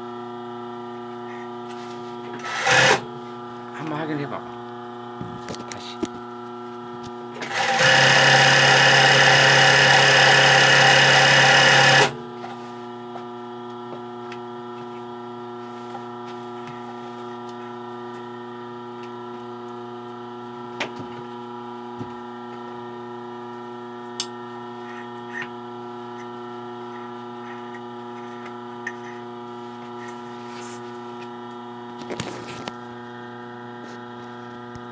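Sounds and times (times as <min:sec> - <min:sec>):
sewing machine stitching: 0:02.4 - 0:03.1, 0:07.4 - 0:12.2
motor humming: 0:07.0 - 0:12.6.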